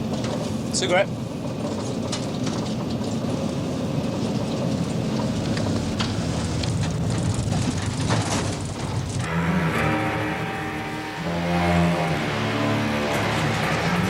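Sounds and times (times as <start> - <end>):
faint rattles: 0.0 - 9.3
vehicle engine and road noise: 0.0 - 14.0.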